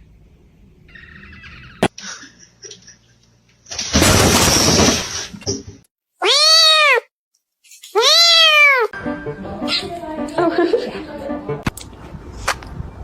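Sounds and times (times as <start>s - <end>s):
cat meowing: 6.2s - 7.1s, 8.0s - 8.9s.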